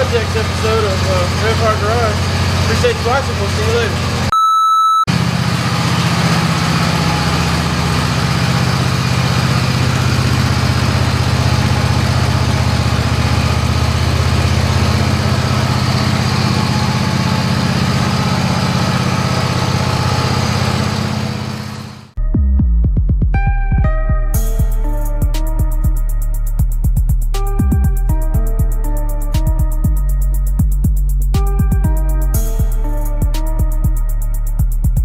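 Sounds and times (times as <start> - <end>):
mower engine running: 0.0 - 4.3, 5.1 - 22.2.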